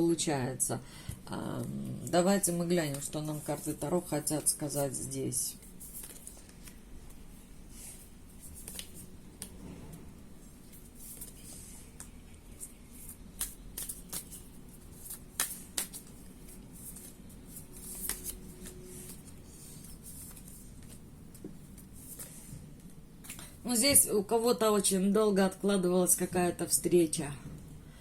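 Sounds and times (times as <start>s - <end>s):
cards being shuffled: 5.6s - 6.8s, 8.4s - 9.6s, 10.7s - 23.5s.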